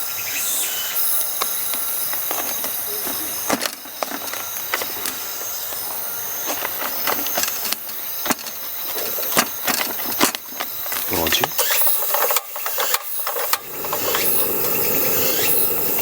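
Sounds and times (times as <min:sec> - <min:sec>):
food sizzling in a pan: 0:12.6 - 0:16.0.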